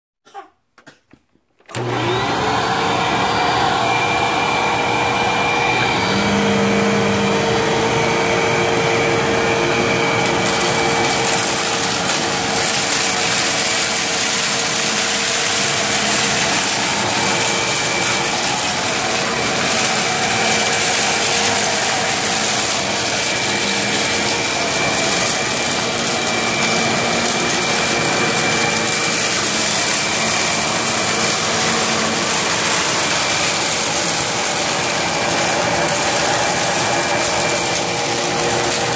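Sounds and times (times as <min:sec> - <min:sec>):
vacuum cleaner running: 0:01.6 - 0:38.9.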